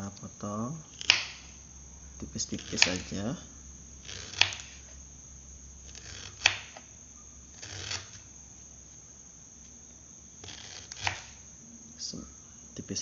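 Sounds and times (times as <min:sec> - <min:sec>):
knife slicing ginger: 0:00.9 - 0:01.5, 0:02.2 - 0:03.3, 0:04.0 - 0:04.9, 0:05.9 - 0:06.8, 0:07.5 - 0:08.2, 0:10.4 - 0:11.4.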